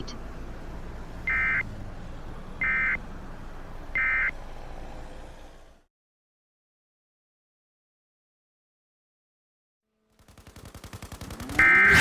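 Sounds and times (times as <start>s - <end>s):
digital data tone bursts: 11.6s - 12.0s.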